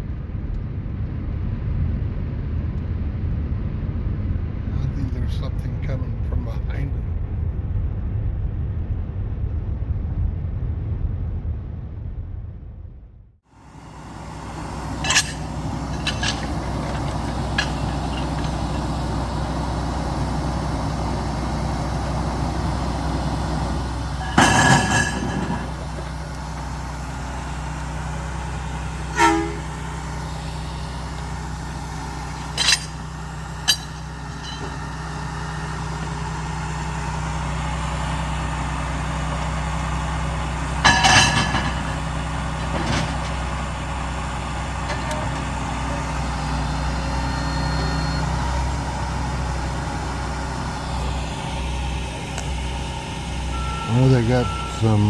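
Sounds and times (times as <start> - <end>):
low engine rumble: 13.5 - 55.0
horn toots: 29.1 - 30.0.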